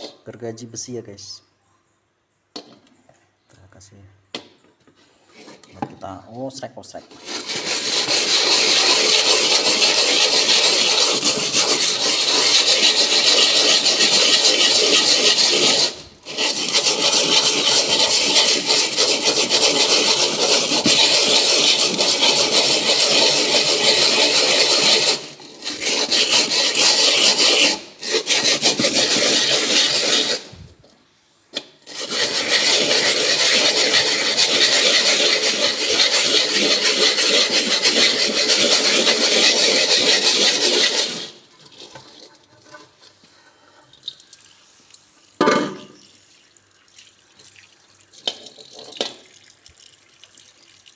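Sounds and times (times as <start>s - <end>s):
saw blade scraping frying pan: 0.0s - 0.2s, 7.1s - 30.7s, 31.5s - 43.6s.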